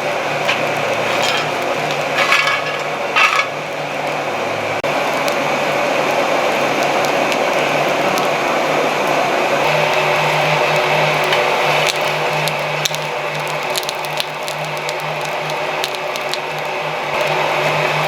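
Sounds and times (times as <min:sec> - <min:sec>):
kindling burning with crackles: 0:00.0 - 0:18.0.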